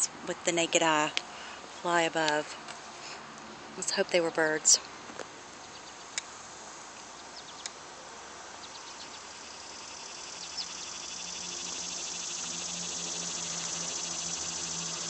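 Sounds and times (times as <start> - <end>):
insects trilling: 7.2 - 15.0.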